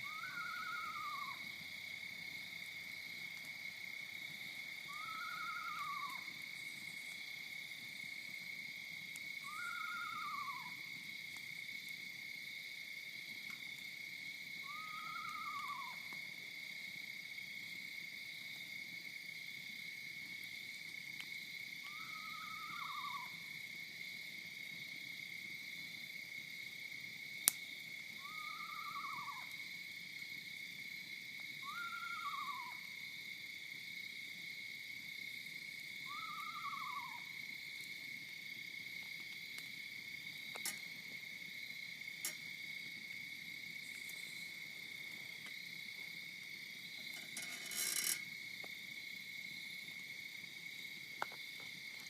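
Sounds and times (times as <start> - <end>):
animal high whistled call: 0.0 - 1.4, 4.9 - 6.2, 9.4 - 10.8, 14.7 - 16.0, 21.9 - 23.3, 28.2 - 29.5, 31.6 - 32.8, 36.1 - 37.2.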